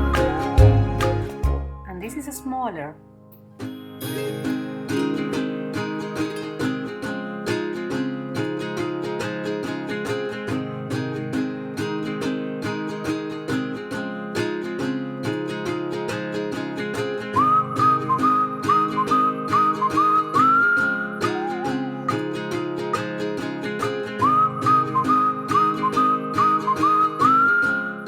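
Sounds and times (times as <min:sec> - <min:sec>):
whistled melody: 0:00.0 - 0:02.2, 0:17.3 - 0:28.0
acoustic guitar strumming: 0:00.0 - 0:28.0.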